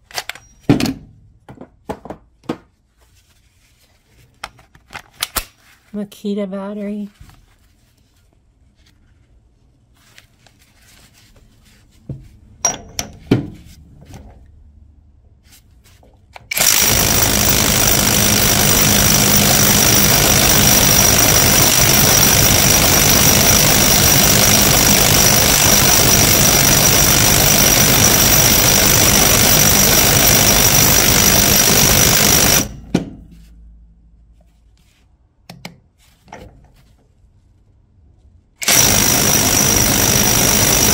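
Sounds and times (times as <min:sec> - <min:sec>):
tool knocks and clicks: 0:12.1 - 0:14.3
impact wrench hammering: 0:12.6 - 0:13.6, 0:16.5 - 0:33.2, 0:38.6 - 0:40.9
high whine of impact wrench: 0:16.5 - 0:32.9, 0:38.6 - 0:40.9.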